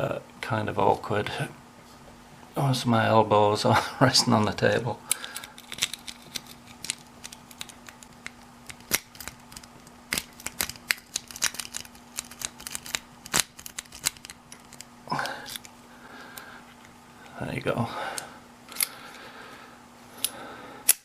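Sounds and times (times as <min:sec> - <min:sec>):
lock pick clicking and scraping: 0:05.5 - 0:15.7.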